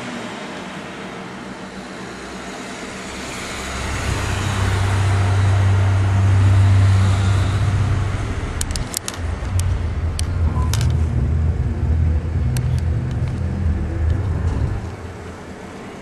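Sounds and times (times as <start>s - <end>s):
low droning rumble: 2.8s - 16.0s
sharp clicks: 8.5s - 11.0s.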